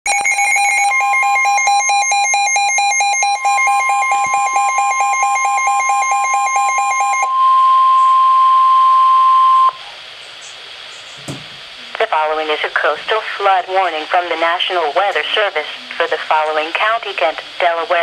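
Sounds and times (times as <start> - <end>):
steady alarm tone: 0.1 - 9.8.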